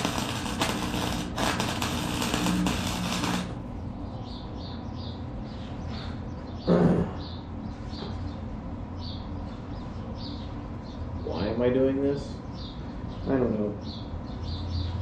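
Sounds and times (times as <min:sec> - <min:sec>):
welding arc crackling: 0:00.0 - 0:03.8
electrical hum: 0:00.0 - 0:14.4
small birds chirping: 0:04.0 - 0:15.0.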